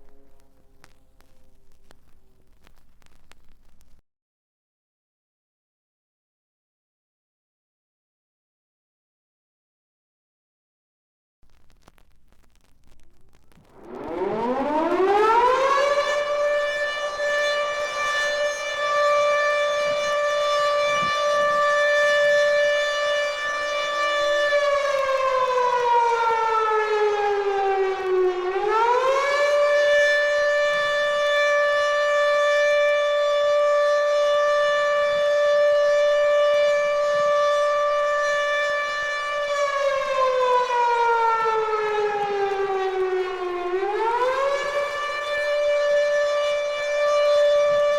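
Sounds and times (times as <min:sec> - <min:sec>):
civil defense siren: 0:00.0 - 0:01.7, 0:13.7 - 0:47.9.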